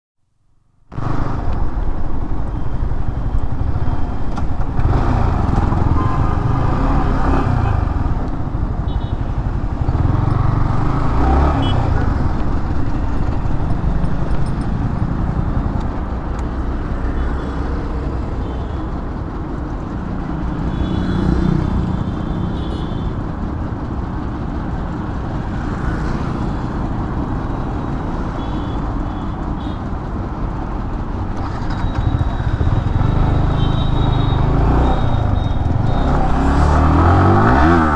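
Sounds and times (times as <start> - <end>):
motorcycle engine revving: 0.9 - 17.3, 31.2 - 37.9.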